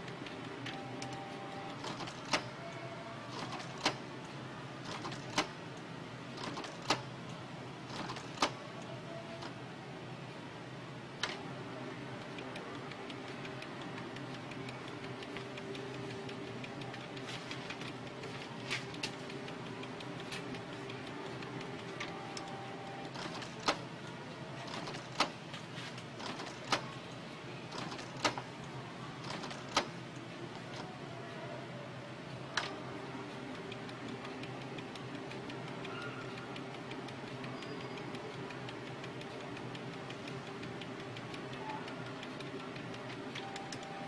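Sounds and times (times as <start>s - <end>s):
printer mechanical clicks: 0.0s - 4.1s, 4.8s - 5.6s, 6.4s - 8.6s, 11.2s - 11.5s, 12.1s - 23.9s, 24.6s - 25.4s, 26.2s - 26.9s, 27.7s - 28.5s, 29.2s - 30.0s, 32.6s - 44.0s
printer motor hum: 0.0s - 7.2s, 11.2s - 25.4s, 32.6s - 44.0s.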